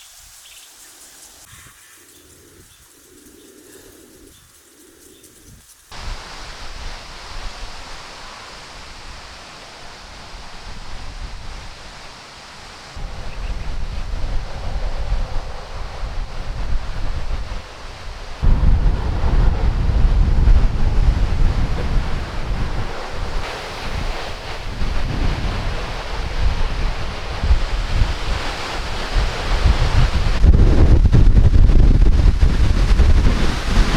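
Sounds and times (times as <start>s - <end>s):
faint bird chirps: 0.0s - 5.8s
rushing weather noise: 1.3s - 33.9s
wind rumbling on microphone: 1.4s - 33.9s.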